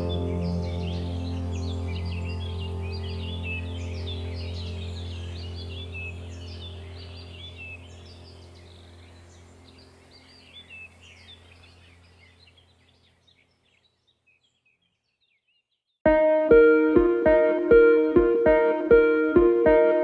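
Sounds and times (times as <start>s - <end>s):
bird chirps: 0.0s - 15.8s
plucked guitar music: 16.1s - 20.0s.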